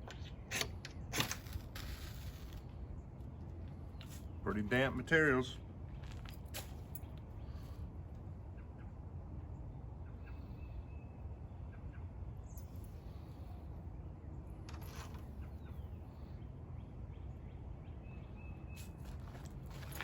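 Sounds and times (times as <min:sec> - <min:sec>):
low outdoor rumble: 0:00.0 - 0:20.0
faint bird chirps: 0:07.0 - 0:19.5.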